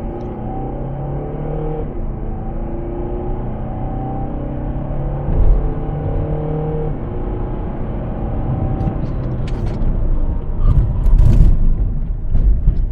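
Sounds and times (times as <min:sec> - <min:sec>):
road rumble: 0:00.0 - 0:12.9
car engine running: 0:04.4 - 0:12.9.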